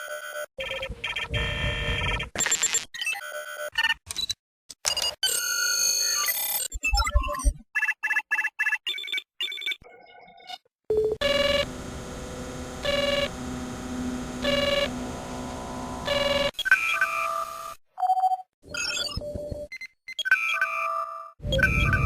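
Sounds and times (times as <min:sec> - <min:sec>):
steady electronic hum: 0:11.2 - 0:16.5.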